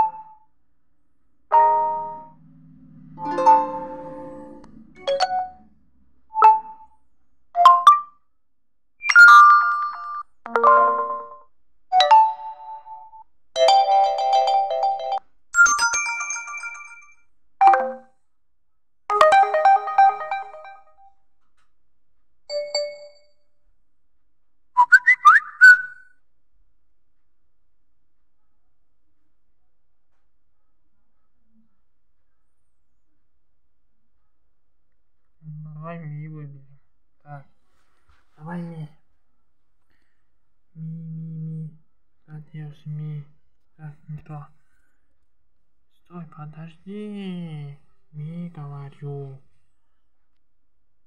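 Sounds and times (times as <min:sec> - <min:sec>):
phone ringtone snippets: 0:13.8 - 0:18.1.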